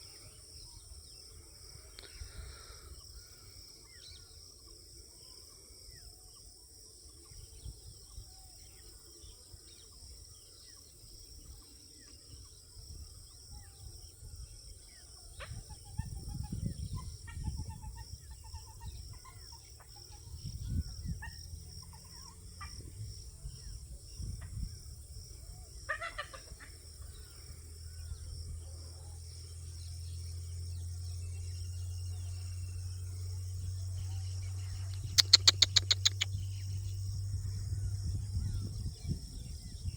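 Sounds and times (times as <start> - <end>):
insects chirping: 0.0 - 39.9
faint scattered calls: 25.7 - 27.4, 35.0 - 36.3
steady low hum: 26.8 - 39.9.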